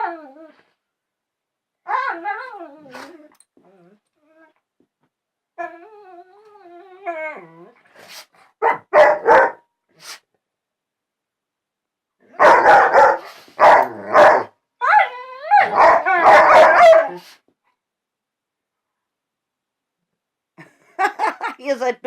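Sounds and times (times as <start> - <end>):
dog howling and whining: 0.0 - 0.7, 1.8 - 4.6, 5.6 - 7.9, 13.8 - 17.3
dogs barking: 8.6 - 9.6, 12.4 - 14.5, 15.6 - 17.2.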